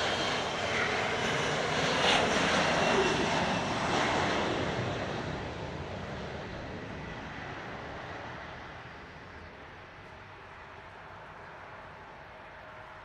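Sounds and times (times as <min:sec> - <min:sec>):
jet engine roar: 0:00.0 - 0:11.0.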